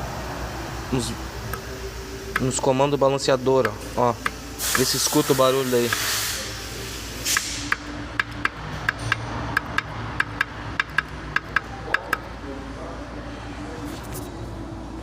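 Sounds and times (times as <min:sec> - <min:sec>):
metal clicks of shaft knocking: 0:07.7 - 0:12.2.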